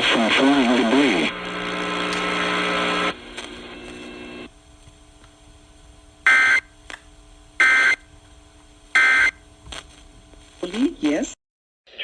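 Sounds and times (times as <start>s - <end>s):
radio hiss: 0.0s - 4.5s
faint hum: 0.0s - 12.0s.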